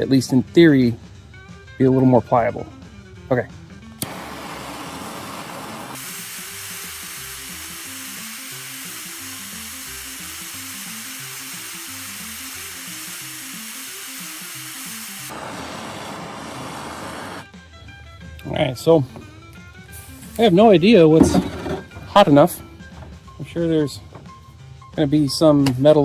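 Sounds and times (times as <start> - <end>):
low melody background music: 0.0 - 4.1, 17.4 - 26.0
torch flame hissing: 4.0 - 17.5.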